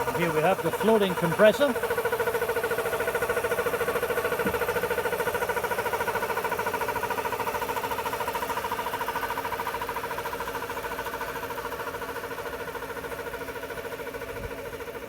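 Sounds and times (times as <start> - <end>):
compressor running: 0.0 - 8.2.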